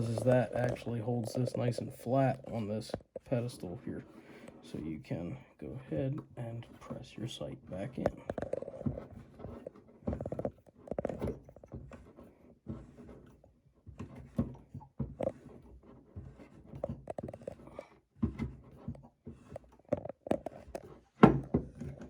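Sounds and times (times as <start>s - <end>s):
small metal clicks and scrapes: 6.4s - 22.0s.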